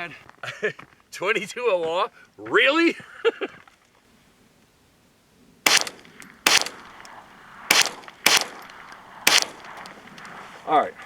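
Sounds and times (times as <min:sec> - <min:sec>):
gunshots with echo: 0:05.7 - 0:07.0, 0:07.7 - 0:09.8.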